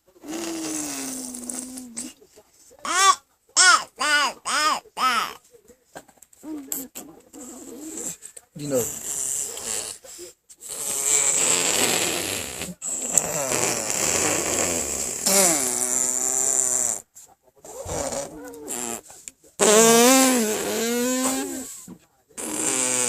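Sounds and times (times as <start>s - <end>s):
person blowing raspberries: 0.2s - 2.1s, 7.4s - 17.0s, 17.8s - 21.8s, 22.4s - 23.0s.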